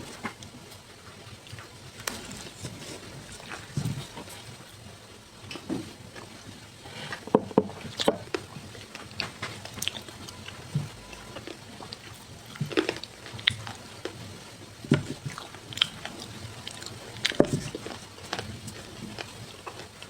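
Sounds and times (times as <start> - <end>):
biting and chewing crunches: 0.0 - 4.9, 7.1 - 20.0.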